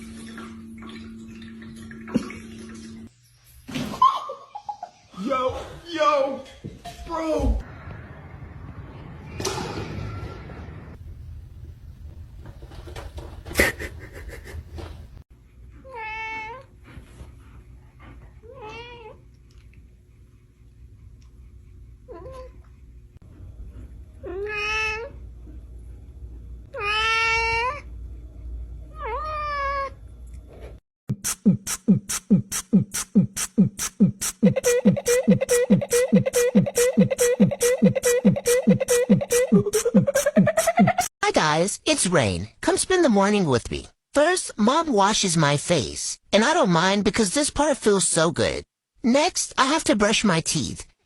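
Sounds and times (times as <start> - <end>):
electronic music with kick drums: 31.1 - 41.1.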